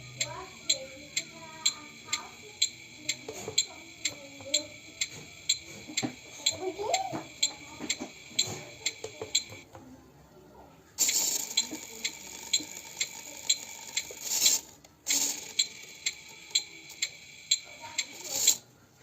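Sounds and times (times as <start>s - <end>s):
regular ticking: 0.0s - 9.8s, 11.0s - 18.6s.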